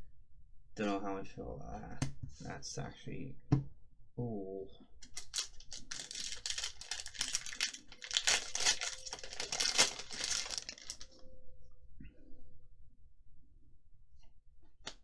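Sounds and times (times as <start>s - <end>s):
plastic crinkling and rustling: 5.0s - 11.2s.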